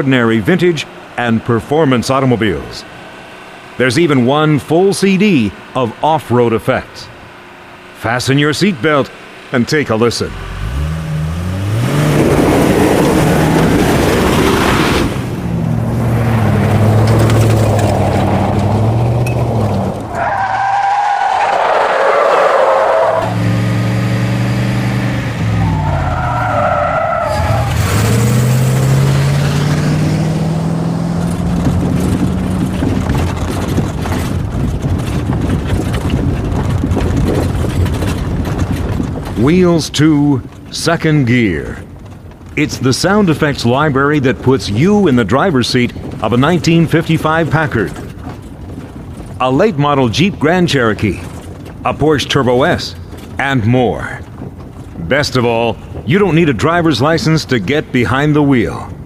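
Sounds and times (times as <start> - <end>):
car engines revving: 0.0 - 59.0
tire squeals: 10.3 - 39.5.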